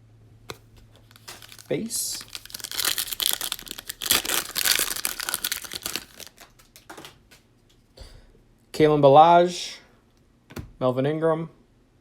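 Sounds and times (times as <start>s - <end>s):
wrapper tearing and crinkling: 1.0s - 7.1s.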